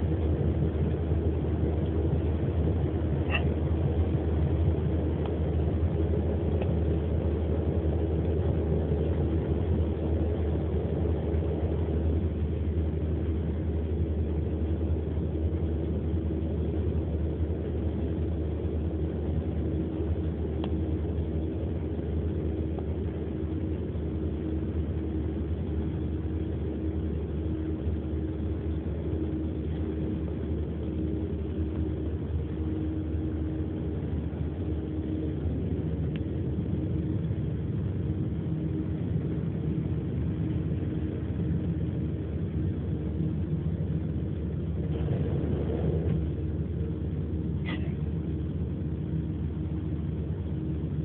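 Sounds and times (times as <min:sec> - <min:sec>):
engine and road rumble: 0:00.0 - 0:51.0.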